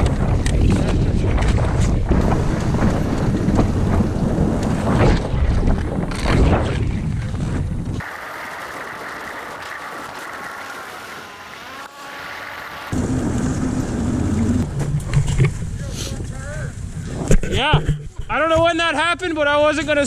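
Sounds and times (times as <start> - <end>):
wind buffeting microphone: 0.0 - 18.3.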